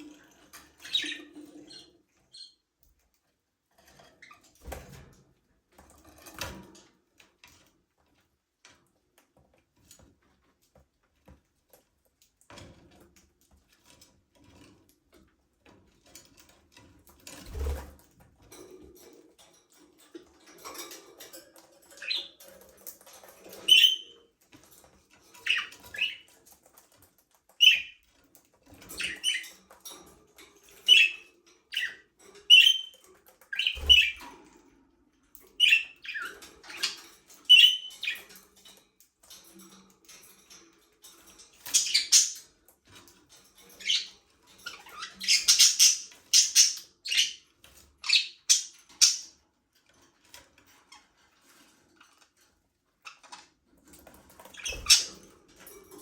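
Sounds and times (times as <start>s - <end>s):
budgerigars chirping: 33.6s - 34.2s, 35.6s - 36.2s, 36.8s - 38.2s, 41.8s - 42.4s, 45.0s - 47.4s, 48.0s - 49.3s.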